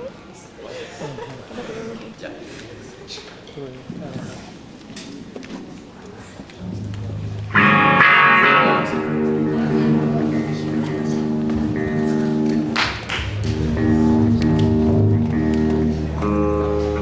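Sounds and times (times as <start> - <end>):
low held note: 6.6 - 12.6, 13.3 - 17.0
loud guitar chords ringing: 6.6 - 17.0.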